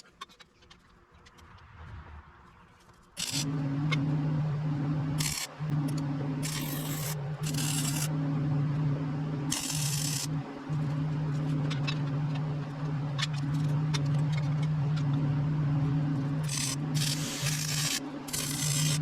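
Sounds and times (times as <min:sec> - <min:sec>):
welder humming: 0:03.2 - 0:19.0
welding hissing crackle: 0:05.2 - 0:08.2, 0:09.5 - 0:12.0, 0:16.4 - 0:19.0.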